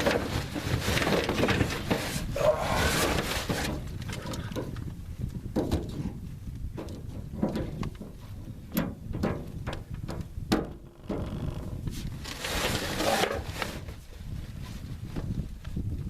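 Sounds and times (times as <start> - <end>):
rustling: 0.0 - 4.5, 11.9 - 15.2
handling knocks and clicks: 3.1 - 11.4.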